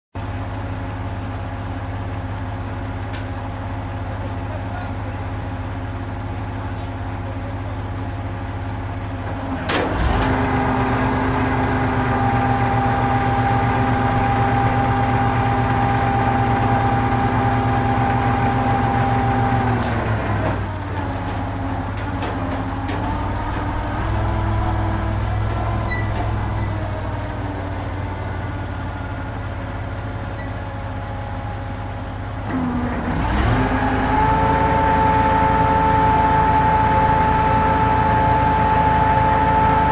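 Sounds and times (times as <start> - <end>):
truck engine idling and revving: 0.2 - 39.9.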